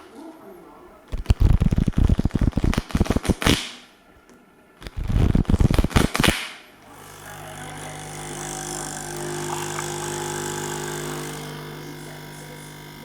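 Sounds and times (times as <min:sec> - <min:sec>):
small motor humming: 0:06.8 - 0:13.0.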